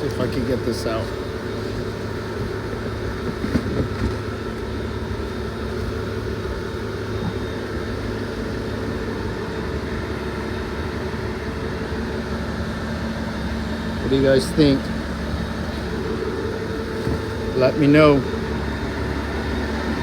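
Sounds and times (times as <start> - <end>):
low mechanical hum: 0.0 - 20.0.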